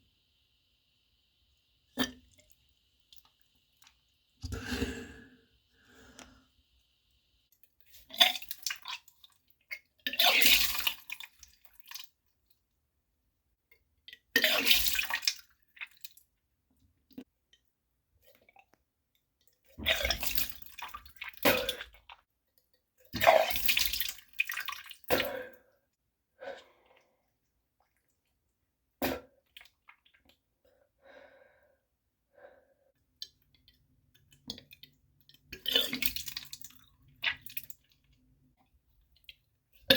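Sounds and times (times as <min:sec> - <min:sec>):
person vomiting: 0:04.4 - 0:05.4.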